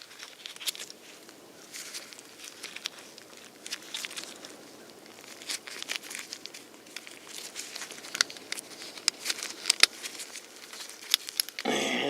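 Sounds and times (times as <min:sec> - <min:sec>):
wiring rustling: 0:00.0 - 0:11.7.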